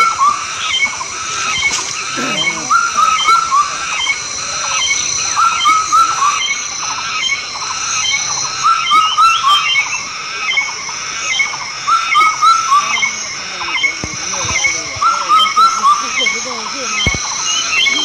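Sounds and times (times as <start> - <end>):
short animal calls: 1.7 - 3.5.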